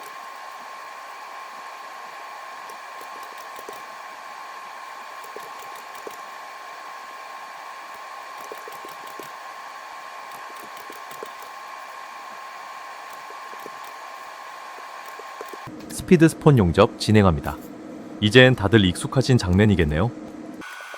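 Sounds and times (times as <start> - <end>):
machine whir with high whine: 0.0 - 20.9
small parts clicking and tapping: 2.6 - 3.8, 8.4 - 9.3, 13.1 - 14.0.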